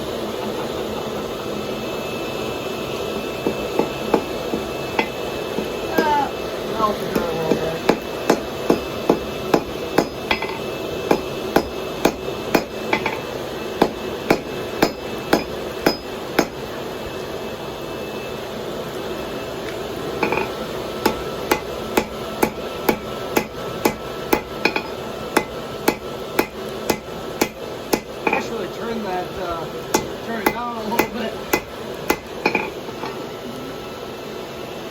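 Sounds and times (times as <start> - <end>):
hammer striking hot steel on anvil: 3.4 - 16.7, 20.2 - 28.6, 29.8 - 33.3.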